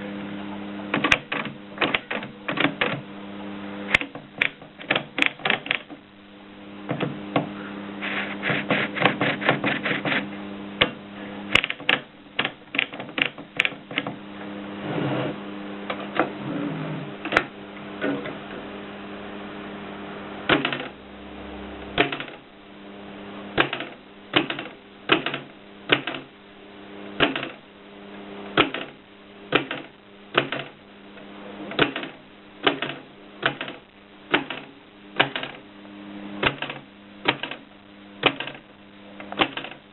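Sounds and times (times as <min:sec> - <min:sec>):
steady low hum: 0:00.0 - 0:39.9
typewriter keystrokes: 0:00.9 - 0:03.0, 0:03.9 - 0:05.9, 0:08.4 - 0:10.2, 0:11.6 - 0:14.1, 0:20.5 - 0:20.9, 0:22.0 - 0:22.4, 0:23.6 - 0:26.3, 0:27.2 - 0:27.6, 0:28.6 - 0:30.8, 0:31.8 - 0:35.6, 0:36.4 - 0:37.6, 0:38.2 - 0:38.6, 0:39.3 - 0:39.8.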